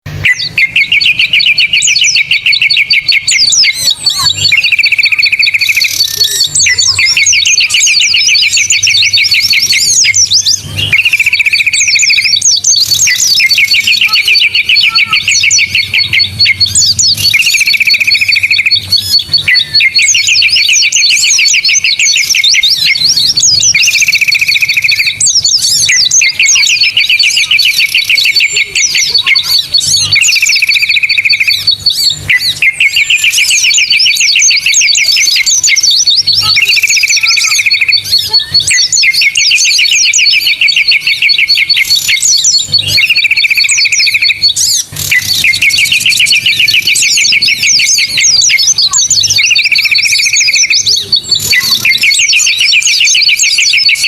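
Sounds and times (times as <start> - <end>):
songbirds chirping and whistling: 0.0 - 54.0
buzzing bird trill: 0.1 - 54.0
high pips: 0.1 - 54.0.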